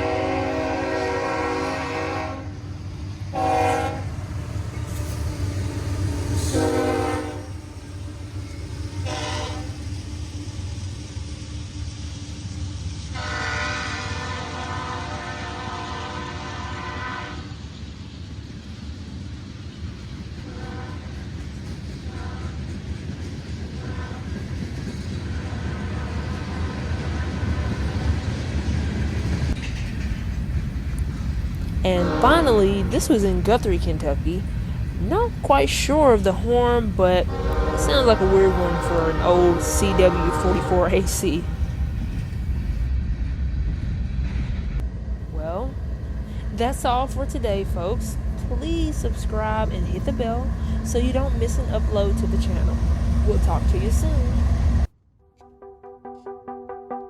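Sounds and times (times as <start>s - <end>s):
locomotive horn blasts: 0.0s - 2.5s, 3.4s - 4.1s, 6.4s - 7.6s, 9.0s - 9.8s, 13.2s - 17.4s, 32.0s - 33.2s, 37.3s - 41.4s
steady low rumble: 24.4s - 54.9s.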